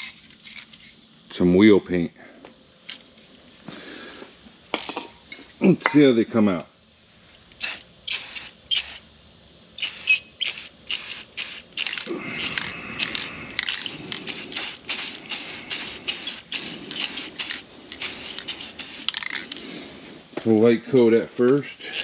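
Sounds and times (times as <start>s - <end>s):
aerosol spray can hissing: 7.6s - 9.0s, 9.8s - 20.0s, 21.8s - 22.0s.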